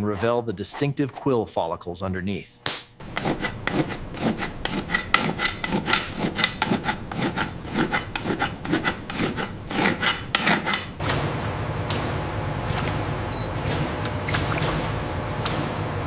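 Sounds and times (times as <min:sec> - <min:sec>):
blade scraping hide: 0:00.0 - 0:01.5, 0:03.0 - 0:11.2
steady low hum: 0:00.0 - 0:16.0.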